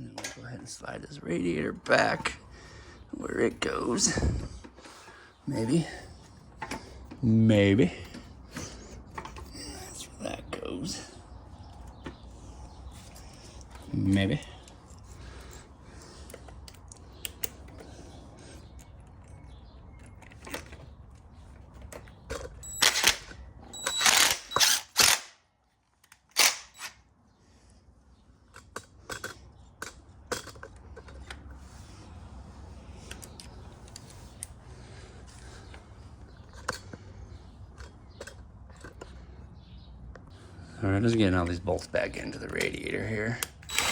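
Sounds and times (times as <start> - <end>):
metal parts clicking and clinking: 18.8 - 25.2, 28.5 - 31.6, 36.4 - 39.2.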